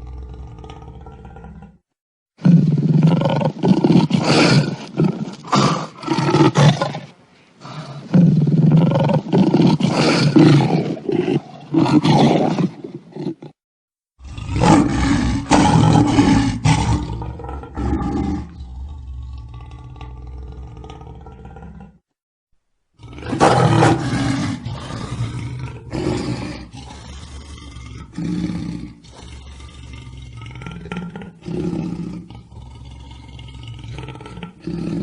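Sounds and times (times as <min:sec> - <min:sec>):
lion roaring and growling: 0:00.0 - 0:01.8, 0:14.2 - 0:22.0, 0:23.0 - 0:35.0.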